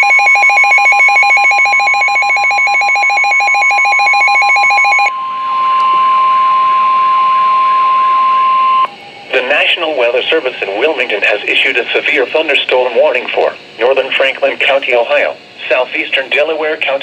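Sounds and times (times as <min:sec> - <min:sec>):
rapidly pulsing electronic alarm: 0:00.0 - 0:13.1
loud steady alarm tone: 0:00.0 - 0:16.6.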